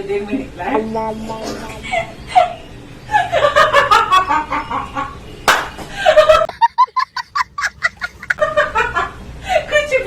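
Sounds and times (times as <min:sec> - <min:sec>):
sharp smack: 0:05.5 - 0:05.8.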